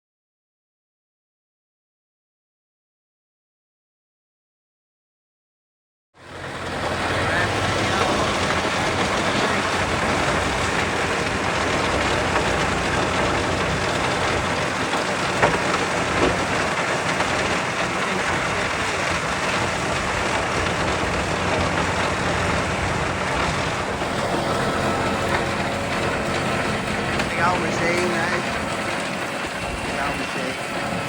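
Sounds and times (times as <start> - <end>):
wood chipper diesel engine: 6.2 - 31.0.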